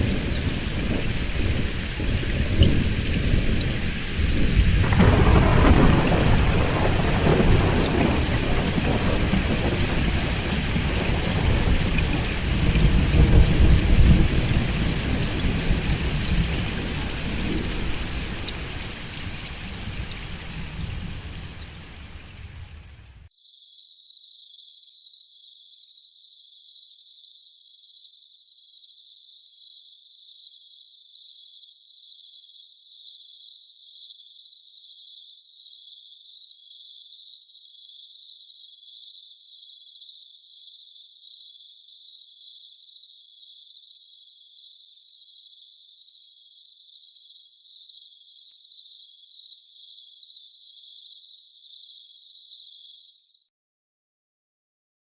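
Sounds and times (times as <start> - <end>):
cricket chirping: 0.0 - 22.7, 23.3 - 53.5
rain falling: 0.0 - 23.3
rumbling thunder: 0.0 - 23.3.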